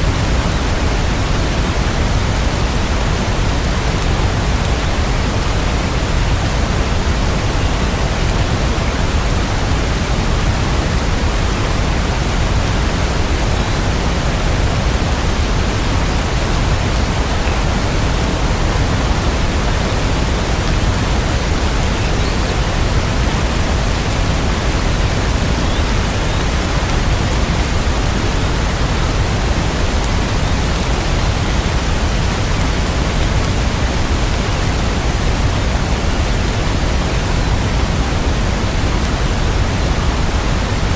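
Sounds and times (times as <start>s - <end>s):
steady rain: 0.0s - 40.9s.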